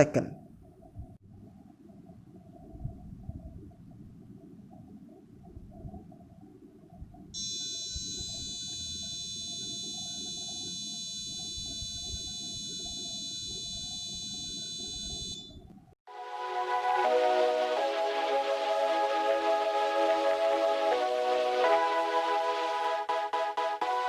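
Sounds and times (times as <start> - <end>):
high-pitched buzzer tone: 7.4 - 15.6.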